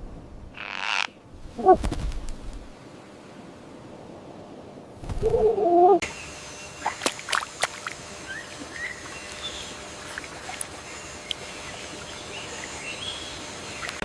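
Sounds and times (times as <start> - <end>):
forest ambience: 0.1 - 14.0
low wavering animal call: 5.2 - 6.0.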